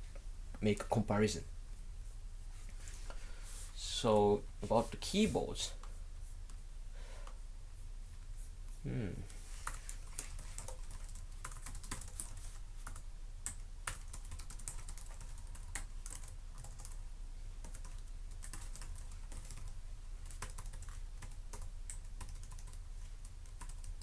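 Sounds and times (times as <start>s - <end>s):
laptop keyboard typing: 9.6s - 17.0s, 17.6s - 24.0s.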